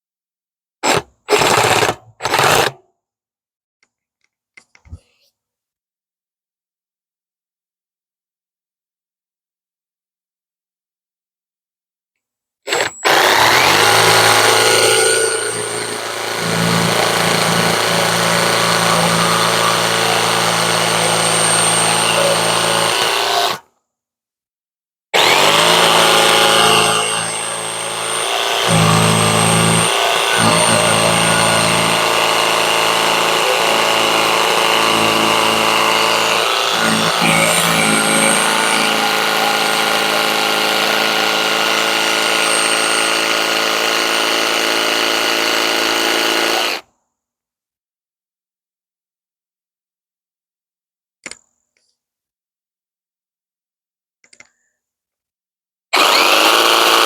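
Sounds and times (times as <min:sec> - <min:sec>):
jigsaw cutting wood: 0:00.8 - 0:02.8, 0:12.7 - 0:23.6, 0:25.2 - 0:46.8, 0:56.0 - 0:57.0.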